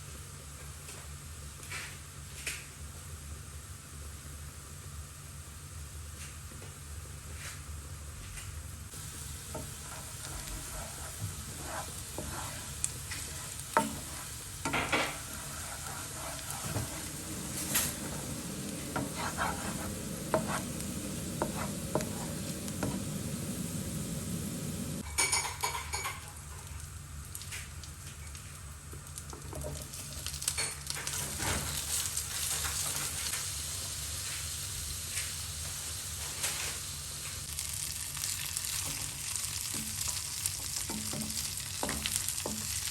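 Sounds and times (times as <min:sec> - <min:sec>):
food sizzling in a frying pan: 0:08.9 - 0:42.9
utensil scraping a pan: 0:09.5 - 0:23.3.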